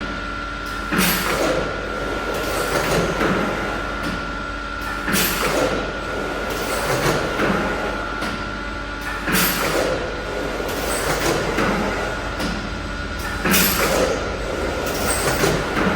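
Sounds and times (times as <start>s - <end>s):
steady machine whine: 0.0s - 15.9s
machine clunks and knocks: 6.6s - 15.9s.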